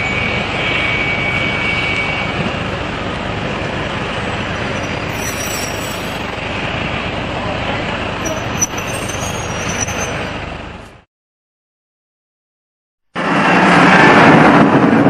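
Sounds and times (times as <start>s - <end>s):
high rail squeal: 0.0s - 6.8s, 7.7s - 10.9s
train rumble on track: 0.0s - 11.1s, 13.2s - 15.0s.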